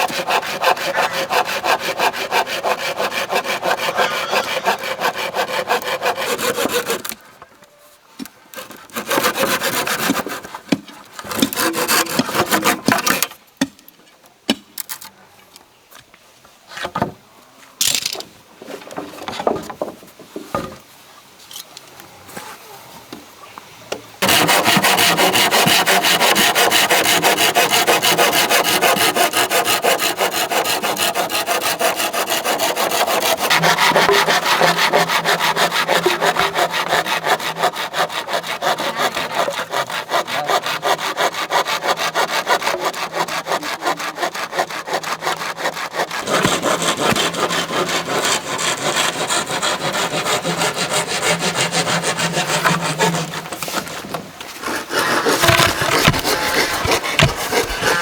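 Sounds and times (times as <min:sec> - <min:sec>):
saw cutting bamboo: 0:00.0 - 0:07.2, 0:08.6 - 0:10.6, 0:11.3 - 0:13.3, 0:24.2 - 0:58.0.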